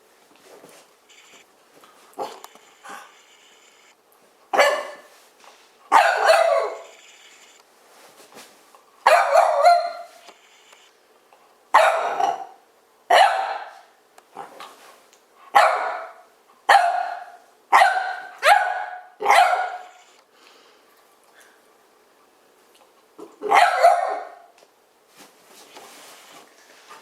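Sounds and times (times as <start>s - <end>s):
dog barking: 4.5s - 5.1s, 5.9s - 6.9s, 9.0s - 10.2s, 11.7s - 13.9s, 15.5s - 20.0s, 23.4s - 24.5s.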